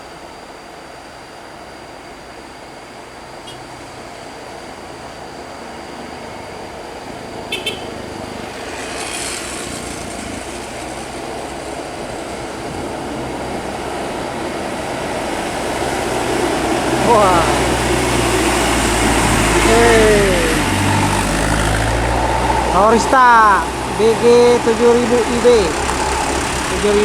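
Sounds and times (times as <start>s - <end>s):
bus engine running: 0.0s - 27.0s
short horn toots: 7.5s - 8.1s.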